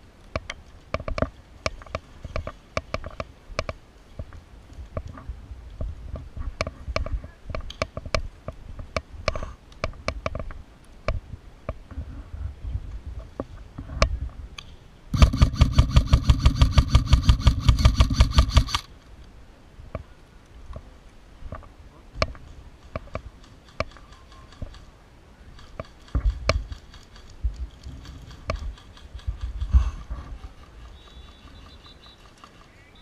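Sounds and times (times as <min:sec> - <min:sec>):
sharp clicks and knocks: 0:00.3 - 0:05.2, 0:05.8 - 0:11.8, 0:13.2 - 0:18.9, 0:21.5 - 0:24.9, 0:25.6 - 0:32.7
rapidly pulsing buzz: 0:15.1 - 0:18.9.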